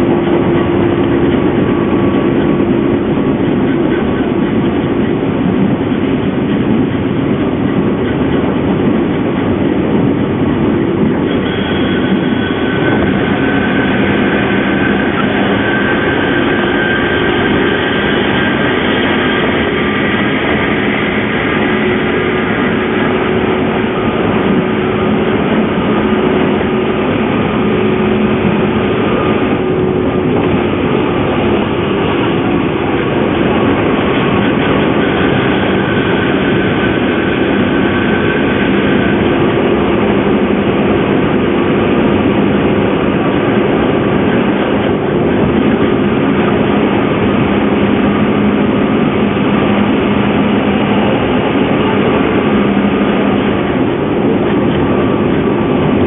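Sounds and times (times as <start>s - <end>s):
train rail rumble: 0.0s - 56.0s
traction motor whining screech: 11.3s - 30.2s.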